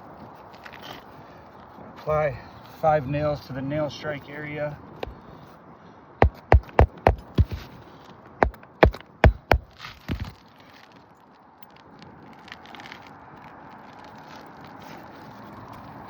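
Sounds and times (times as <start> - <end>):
hammer striking roofing nails: 6.2 - 7.7, 8.4 - 10.3.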